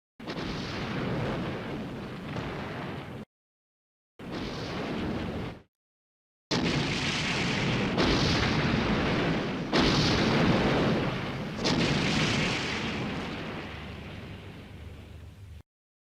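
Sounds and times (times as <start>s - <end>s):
heavy explosion blasts: 0.2s - 3.3s, 4.2s - 5.7s, 6.5s - 15.2s.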